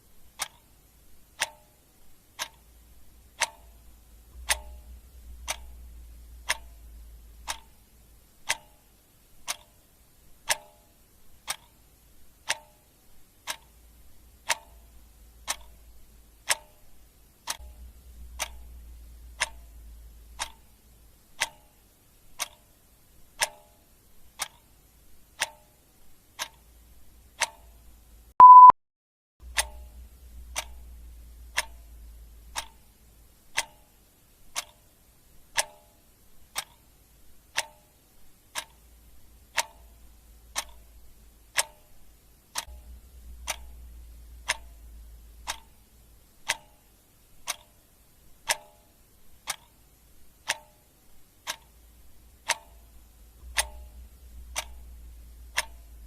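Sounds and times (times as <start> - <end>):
clock ticking: 0.0 - 28.7, 29.4 - 56.0
short loud beep: 28.4 - 28.8.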